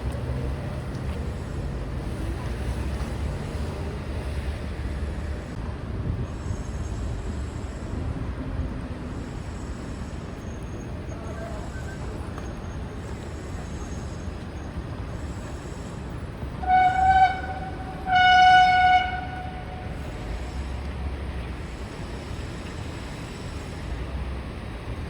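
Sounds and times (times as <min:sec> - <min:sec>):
street traffic rumble: 0:00.0 - 0:25.0
vehicle horn honking: 0:16.6 - 0:20.1.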